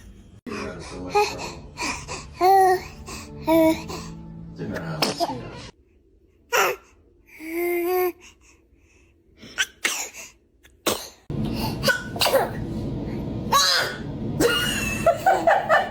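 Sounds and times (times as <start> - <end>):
baby sneezing: 9.4 - 11.2, 11.8 - 12.6.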